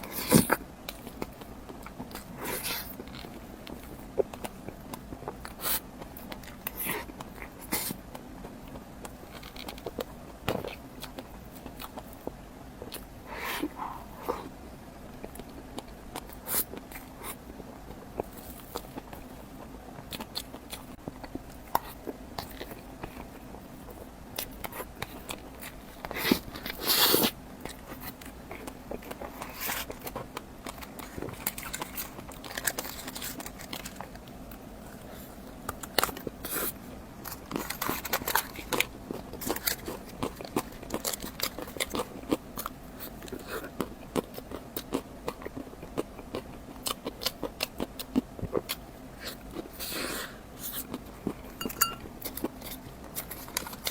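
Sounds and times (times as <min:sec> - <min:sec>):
person chewing and biting: 0:15.2 - 0:53.9.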